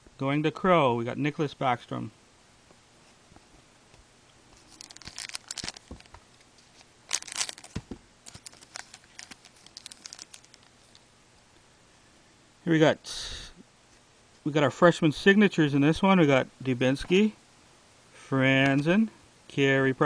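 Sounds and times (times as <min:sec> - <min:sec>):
card pack wrapper tearing: 0:04.6 - 0:11.0.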